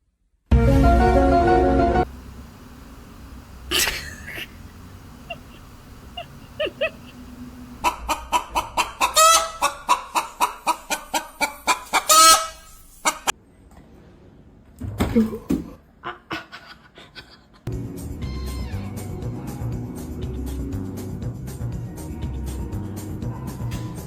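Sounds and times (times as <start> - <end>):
chicken clucking: 3.7 - 13.3
chicken squawks: 3.7 - 13.3.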